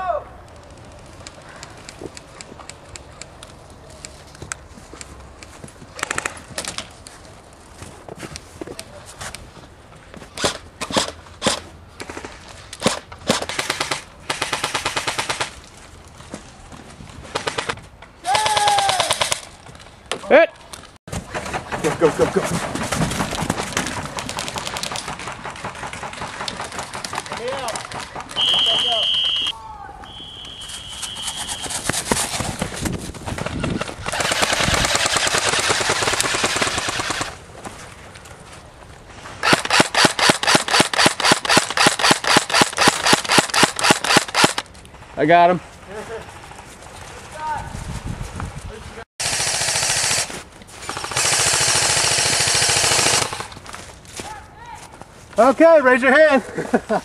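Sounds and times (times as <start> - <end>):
airsoft gun full-auto bursts: 12.8 - 15.6, 33.9 - 37.4, 39.4 - 44.6, 49.2 - 53.6
airsoft gun single shots: 39.4 - 44.6.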